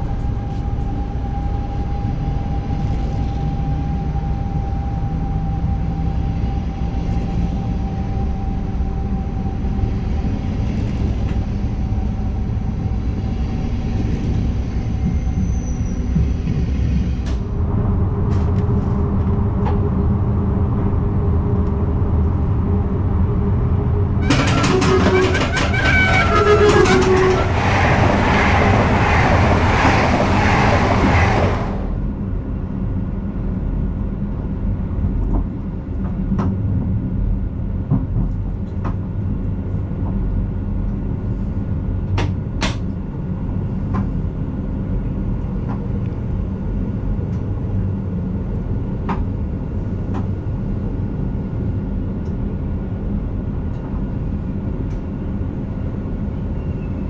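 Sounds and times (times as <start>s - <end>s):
train rumble: 0.0s - 57.0s
train passing with loud rush: 5.7s - 33.3s
train horn notes: 24.2s - 31.9s.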